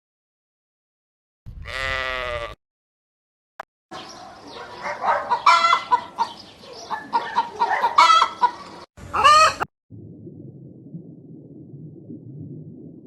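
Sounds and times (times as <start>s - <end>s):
chickens clucking: 4.2s - 9.7s
long bending chicken call: 7.6s - 9.6s.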